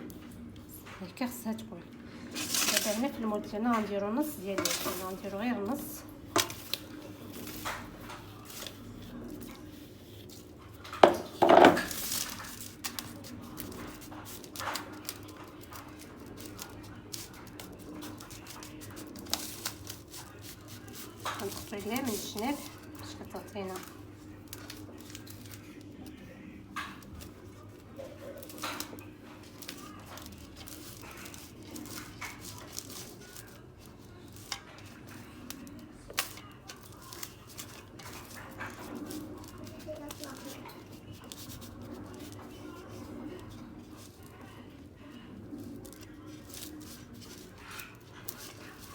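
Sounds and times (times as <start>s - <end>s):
dough handling noises: 0.0s - 48.9s
rustling: 2.0s - 48.9s.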